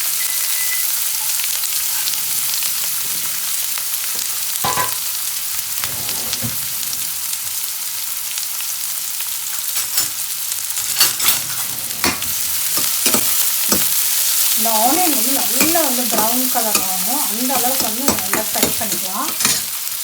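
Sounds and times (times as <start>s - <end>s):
onions sizzling in oil: 0.0s - 20.0s
spoon scraping pan: 9.7s - 19.9s.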